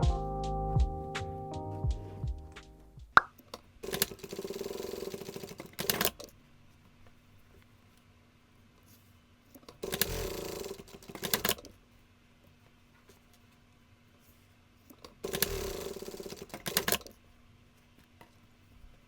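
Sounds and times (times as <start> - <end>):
sewing machine stitching: 3.8 - 6.2, 9.8 - 11.7, 15.2 - 17.1.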